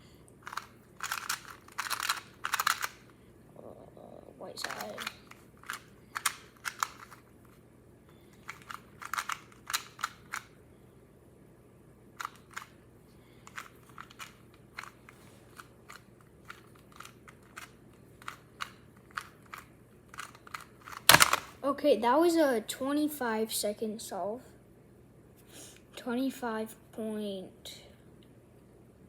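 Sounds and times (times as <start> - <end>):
speed cube plastic clicks: 0.4 - 3.1, 4.6 - 7.2, 8.3 - 10.6, 12.2 - 12.8, 13.4 - 21.6.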